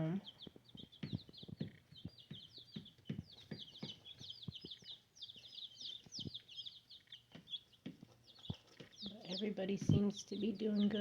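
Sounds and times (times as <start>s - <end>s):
chicks peeping: 0.0s - 11.0s
soft knocks and taps: 0.4s - 4.8s, 7.3s - 9.0s.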